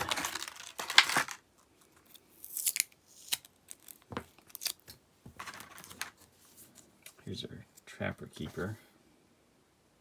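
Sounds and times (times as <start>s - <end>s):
packaging rustling: 0.0s - 1.4s, 3.7s - 6.4s.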